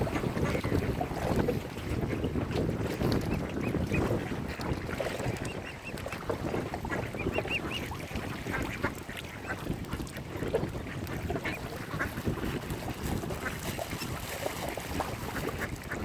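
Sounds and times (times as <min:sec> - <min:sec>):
ducks quacking: 0:00.0 - 0:01.3, 0:03.3 - 0:12.6.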